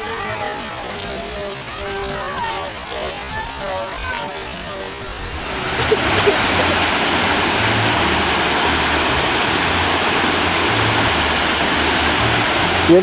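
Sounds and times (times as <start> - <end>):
falling splashing water: 5.2 - 13.0.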